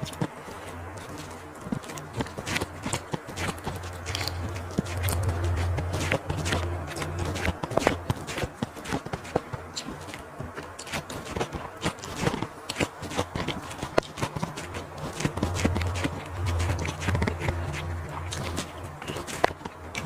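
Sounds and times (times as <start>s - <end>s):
low hum: 0.0s - 8.6s, 14.4s - 20.0s
chewing crunches and mouth clicks: 0.0s - 20.0s.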